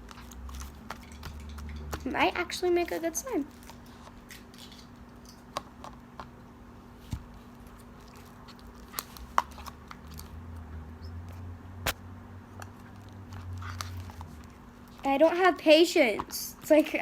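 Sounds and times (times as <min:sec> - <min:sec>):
sticky slime squishing: 0:00.0 - 0:04.5, 0:06.9 - 0:11.4, 0:12.5 - 0:17.0.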